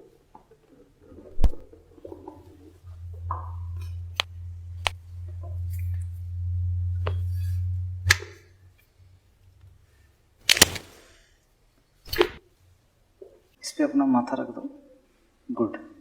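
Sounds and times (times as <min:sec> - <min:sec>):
low electric hum: 0:01.3 - 0:11.3
sharp clicks: 0:10.5 - 0:11.0
loud sharp crack: 0:10.5 - 0:11.2.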